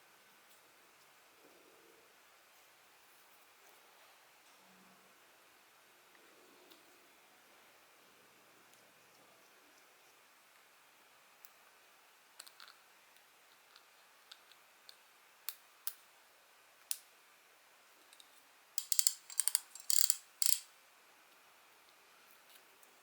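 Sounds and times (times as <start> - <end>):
reel rattling: 18.8 - 20.6
fishing reel clicking: 18.8 - 20.7.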